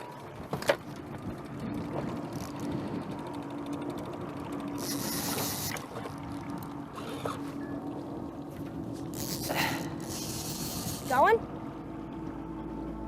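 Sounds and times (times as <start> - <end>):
boat engine hum: 0.0 - 13.0
fishing reel ratchet clicking: 4.7 - 5.8, 9.1 - 11.2.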